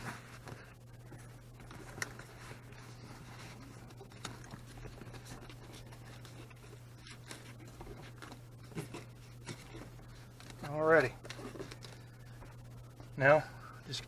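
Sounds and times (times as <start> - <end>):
foam scratching and rustling: 0.0 - 0.4, 1.8 - 11.8
steady low hum: 0.0 - 14.0.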